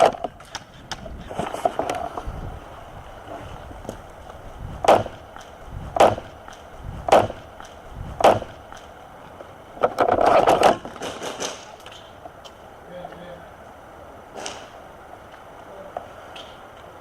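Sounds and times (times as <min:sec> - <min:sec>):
rustle and scrape in dry brush: 0:00.3 - 0:09.0.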